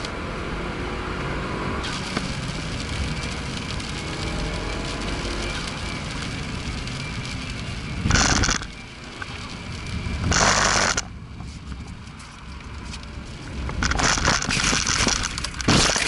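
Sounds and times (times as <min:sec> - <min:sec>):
race car running: 0:00.0 - 0:16.0
car crashing: 0:13.8 - 0:16.0.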